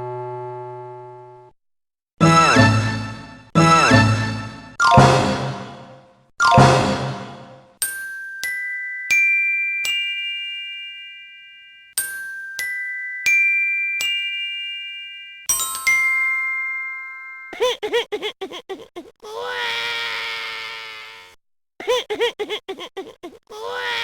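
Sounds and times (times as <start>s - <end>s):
glockenspiel-like chime notes: 6.4s - 17.6s.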